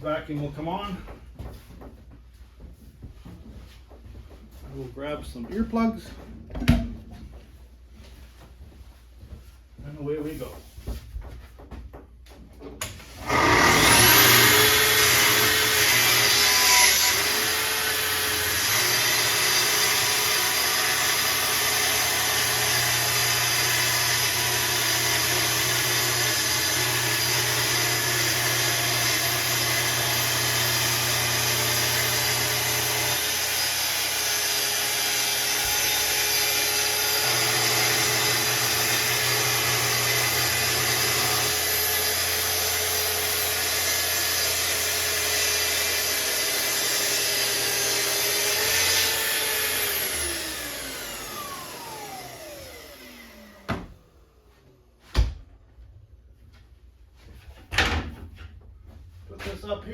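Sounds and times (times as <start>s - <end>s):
track saw cutting: 12.8s - 54.1s
dust extractor running: 13.2s - 53.9s.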